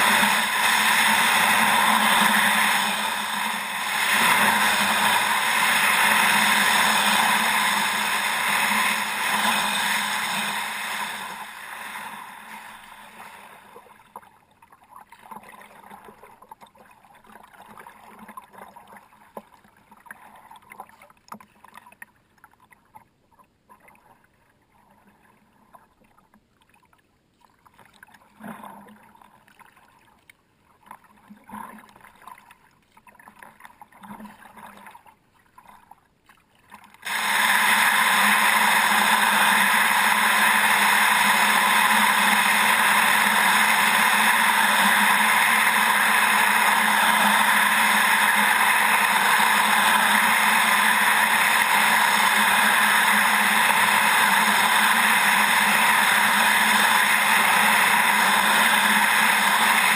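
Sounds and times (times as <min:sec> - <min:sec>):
water rushing: 0:00.0 - 0:13.8, 0:37.0 - 0:59.9.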